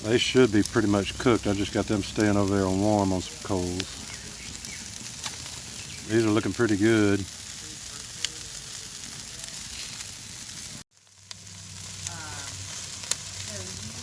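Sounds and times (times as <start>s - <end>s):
chicken wings sizzling on grill: 0.0s - 14.0s
sharp pops: 0.2s - 7.3s.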